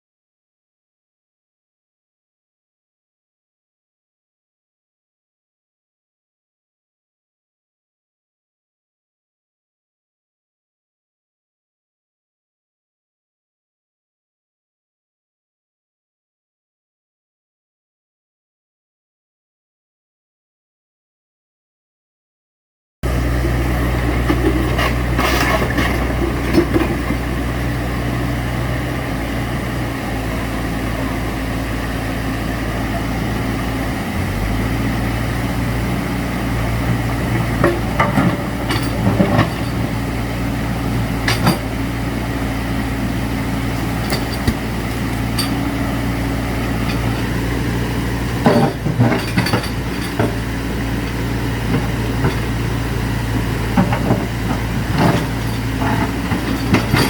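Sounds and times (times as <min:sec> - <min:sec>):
engine running steadily: 0:23.0 - 0:57.0
clanks and knocks: 0:36.9 - 0:39.9, 0:43.8 - 0:45.6, 0:48.3 - 0:50.6, 0:53.8 - 0:57.0.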